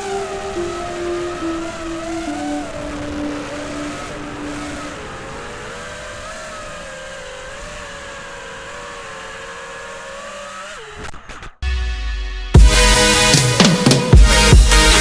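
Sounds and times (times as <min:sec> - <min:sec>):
drone motors buzzing: 0:00.0 - 0:11.4.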